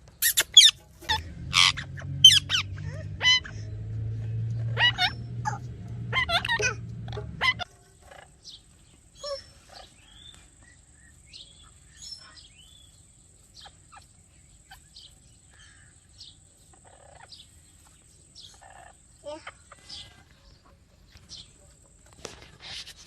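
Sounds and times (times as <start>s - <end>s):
parakeet chirping and whistling: 0.2s - 3.6s.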